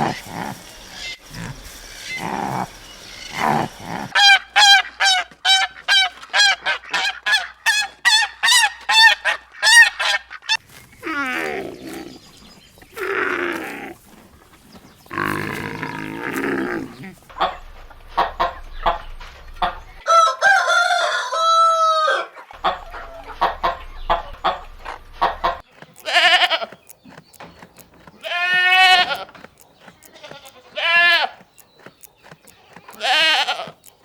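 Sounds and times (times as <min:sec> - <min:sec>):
animal grunting: 0:00.0 - 0:04.2, 0:10.7 - 0:17.4, 0:22.6 - 0:34.0
animal honking calls: 0:00.0 - 0:12.2, 0:12.9 - 0:17.3, 0:25.2 - 0:26.8, 0:28.2 - 0:31.4, 0:32.6 - 0:33.9.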